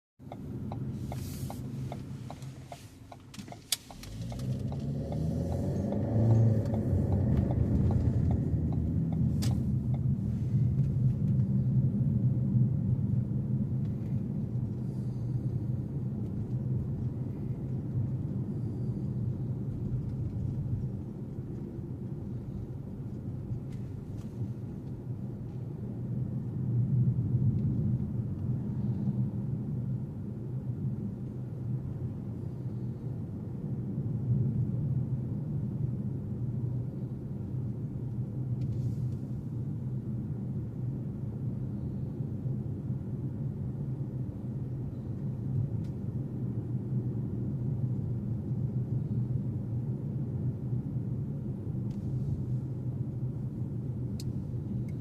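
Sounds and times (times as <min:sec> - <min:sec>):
car engine and road rumble: 0:00.2 - 0:55.0.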